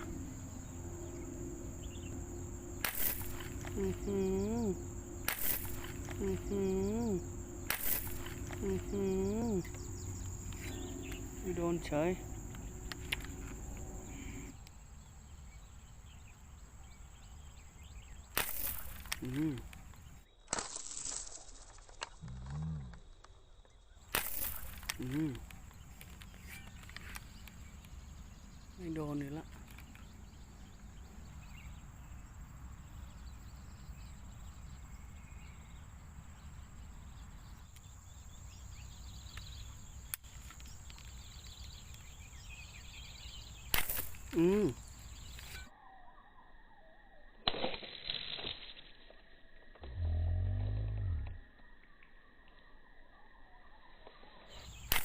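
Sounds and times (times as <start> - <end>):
high-pitched insect drone: 0.0 - 14.6, 17.8 - 22.9, 24.2 - 35.8, 38.0 - 55.0
low rumble: 0.0 - 14.6
low steady hum: 0.0 - 20.2
faint insect chirps: 0.0 - 55.0
sharp click: 5.2 - 6.4, 43.7 - 44.5.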